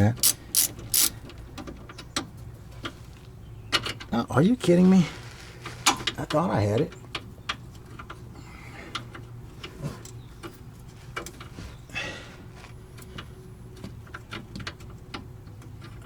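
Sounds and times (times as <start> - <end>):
hand tools clicking and tapping: 0.2 - 3.0
rustle: 4.6 - 6.4.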